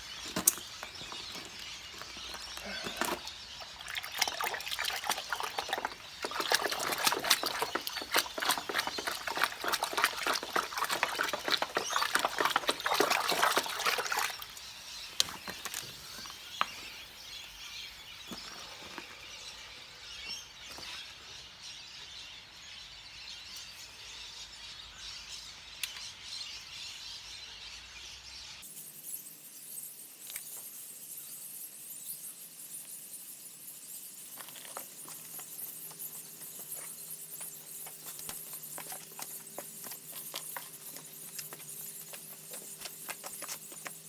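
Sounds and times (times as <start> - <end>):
water pouring and splashing: 1.2 - 16.6, 34.4 - 44.0.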